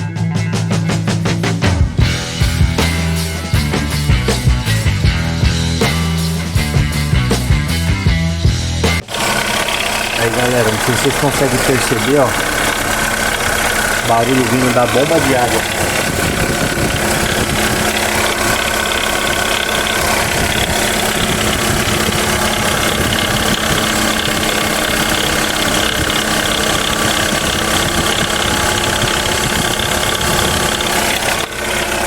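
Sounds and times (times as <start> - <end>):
car engine idling: 2.0 - 32.0
water pump noise: 9.0 - 32.0.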